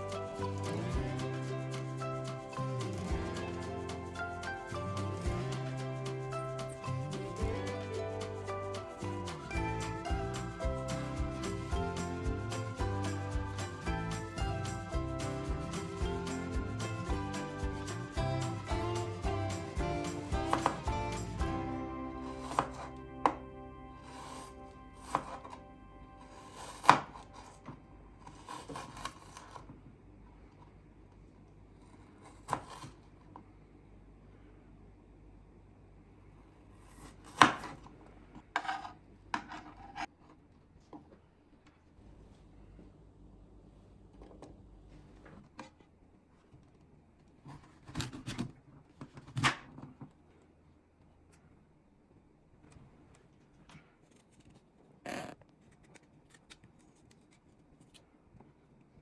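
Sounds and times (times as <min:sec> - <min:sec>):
soft background music: 0:00.0 - 0:29.0
knife chopping on cutting board: 0:20.3 - 0:21.1, 0:22.4 - 0:22.9, 0:25.0 - 0:25.5, 0:26.5 - 0:27.4, 0:37.2 - 0:37.8.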